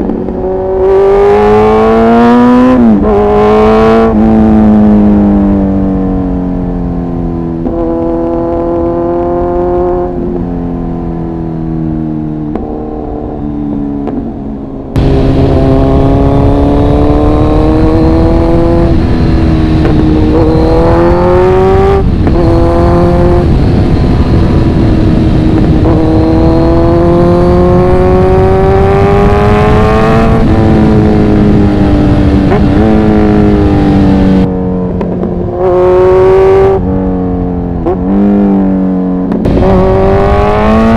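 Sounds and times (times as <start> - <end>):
motorcycle engine shifting gears: 0.0 - 40.9
rushing noise: 14.8 - 34.5, 39.4 - 40.9.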